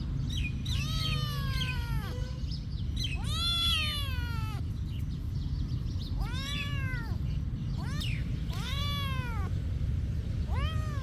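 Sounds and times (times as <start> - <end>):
cat meowing: 0.7 - 2.4, 3.2 - 4.6, 6.2 - 7.2, 7.8 - 9.5, 10.5 - 11.0.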